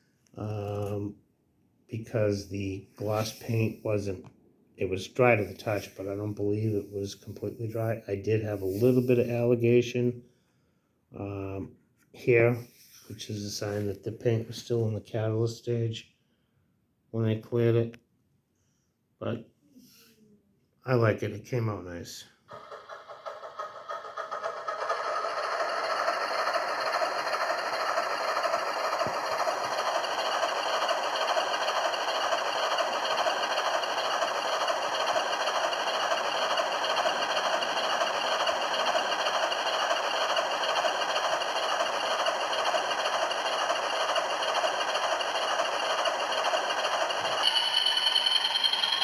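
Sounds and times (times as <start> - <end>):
diesel engine sound from speaker: 0.4 - 1.1, 2.0 - 10.1, 22.5 - 49.0.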